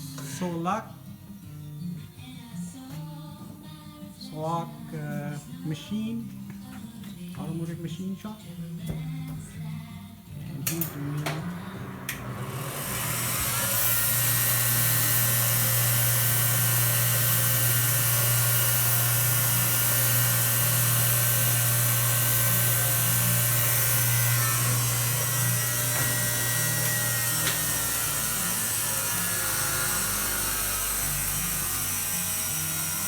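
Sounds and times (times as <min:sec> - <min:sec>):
polishing machine motor hum: 0:10.6 - 0:33.0.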